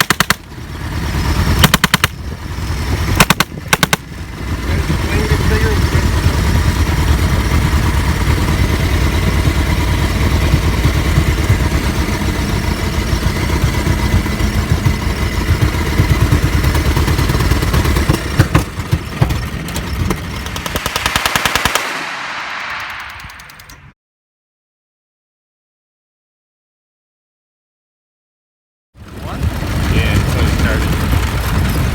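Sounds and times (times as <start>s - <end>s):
replica machine gun rattling: 0.0s - 0.6s, 1.4s - 2.2s, 3.2s - 4.1s.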